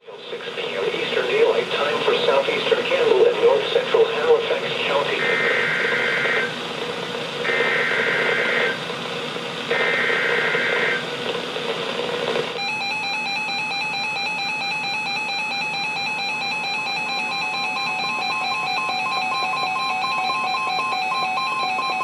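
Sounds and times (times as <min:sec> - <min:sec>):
radio hiss: 0:00.0 - 0:12.5
harsh data bursts: 0:04.8 - 0:06.6, 0:07.5 - 0:08.8, 0:09.7 - 0:11.0
pulsing electronic alarm beep: 0:12.6 - 0:22.0.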